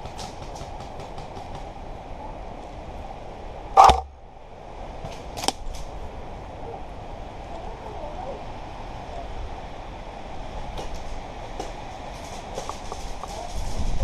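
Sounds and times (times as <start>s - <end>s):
airsoft guns firing: 3.8s - 4.1s
loud bang: 3.8s - 4.2s.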